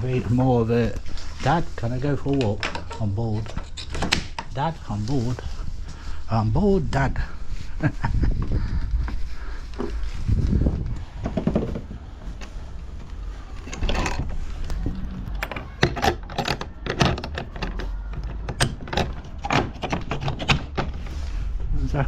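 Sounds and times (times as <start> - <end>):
low rumble: 4.7 - 16.8, 17.9 - 22.0
lock and chain rattling: 12.3 - 21.0.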